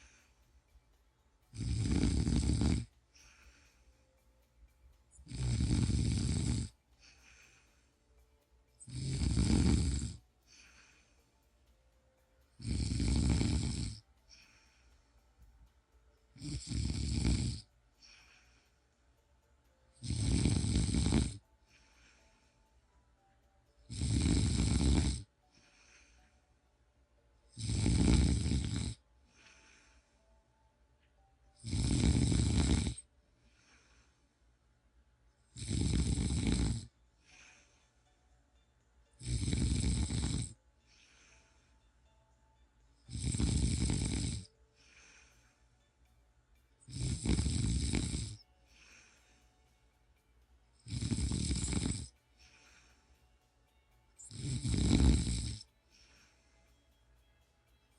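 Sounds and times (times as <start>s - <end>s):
faint breathing: 0.0s - 57.9s
person snoring: 1.5s - 3.9s, 5.2s - 7.9s, 8.8s - 11.2s, 12.6s - 15.0s, 16.4s - 18.6s, 20.0s - 22.6s, 23.9s - 26.2s, 27.5s - 30.3s, 31.6s - 34.2s, 35.4s - 38.1s, 39.2s - 41.7s, 43.0s - 45.6s, 46.8s - 49.4s, 50.8s - 53.1s, 54.2s - 56.6s.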